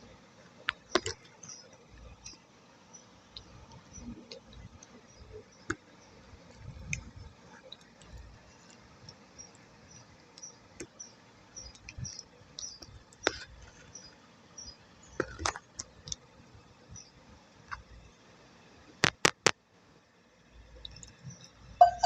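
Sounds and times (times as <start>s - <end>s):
wet clay stirred with sticky clicks: 0.6s - 2.4s, 3.3s - 5.9s, 11.6s - 14.1s, 15.1s - 16.3s, 17.7s - 17.9s.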